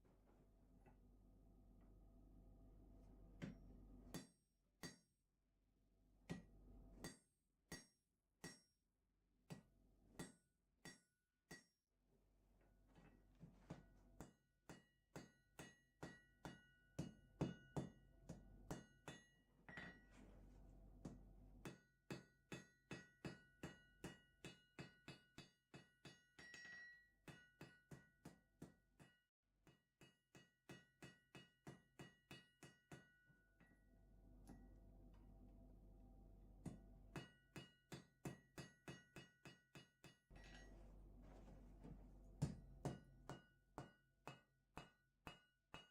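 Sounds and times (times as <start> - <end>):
hammer striking steel on anvil: 4.1 - 5.1, 7.0 - 8.7, 10.2 - 11.7, 14.2 - 20.0, 21.6 - 33.4, 36.7 - 40.7, 42.5 - 45.9.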